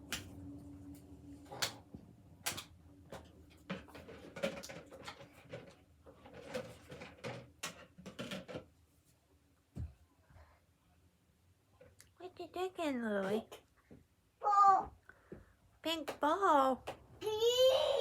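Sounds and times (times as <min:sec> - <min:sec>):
objects knocking and clicking: 0:02.4 - 0:08.8.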